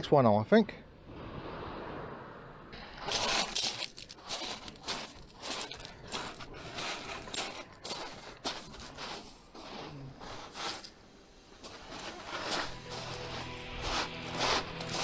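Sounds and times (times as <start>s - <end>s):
fishing tackle rustling and clicking: 3.1s - 15.0s
soft background music: 4.4s - 15.0s.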